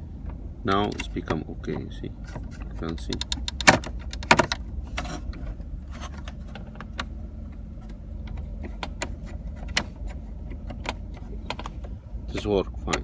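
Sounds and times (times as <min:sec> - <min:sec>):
steady low hum: 0:00.0 - 0:13.0
gear shifter clicks and knocks: 0:00.2 - 0:13.0.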